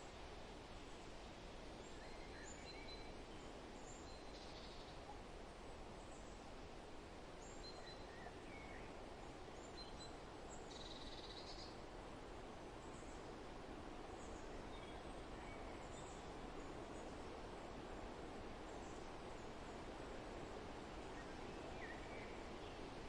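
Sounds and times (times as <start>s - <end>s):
wind rustling: 0.0s - 23.0s
forest birds chirping: 1.8s - 6.4s, 7.4s - 11.8s, 14.0s - 23.0s.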